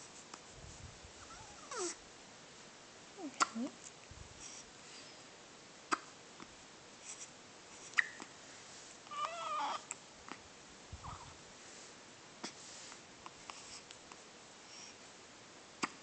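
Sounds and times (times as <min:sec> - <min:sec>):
baby hiccuping: 0:05.9 - 0:06.1, 0:15.8 - 0:16.0.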